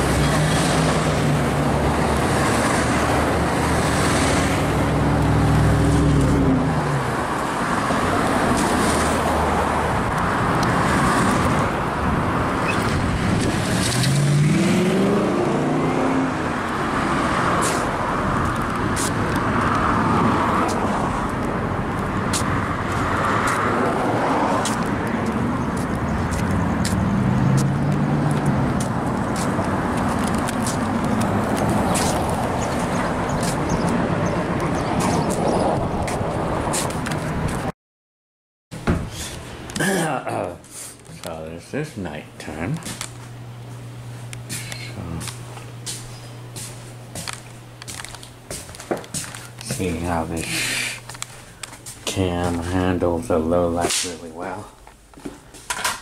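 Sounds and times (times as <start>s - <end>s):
passing vehicles rushing: 0.0s - 37.7s
engine accelerating: 12.4s - 20.8s.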